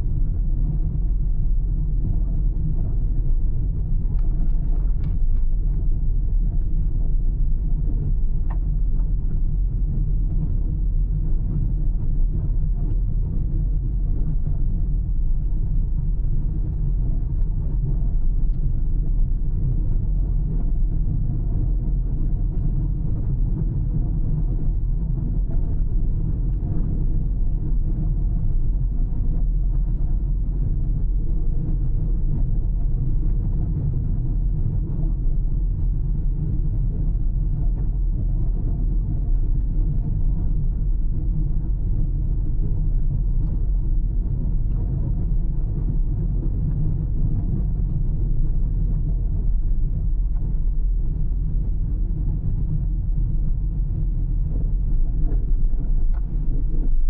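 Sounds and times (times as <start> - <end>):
car tyres and engine rumble: 0.0 - 57.0.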